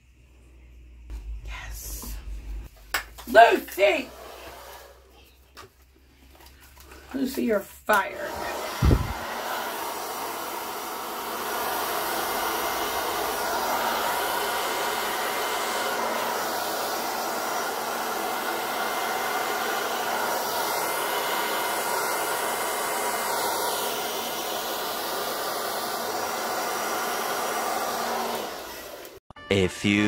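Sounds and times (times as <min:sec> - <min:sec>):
hair dryer running: 0:03.2 - 0:05.1, 0:07.1 - 0:29.2.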